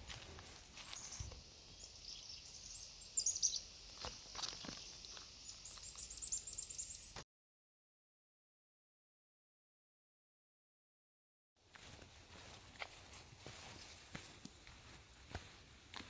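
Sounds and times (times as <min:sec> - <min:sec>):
birds chirping: 0:00.0 - 0:07.2
faint outdoor background: 0:00.0 - 0:07.2, 0:11.6 - 0:16.0.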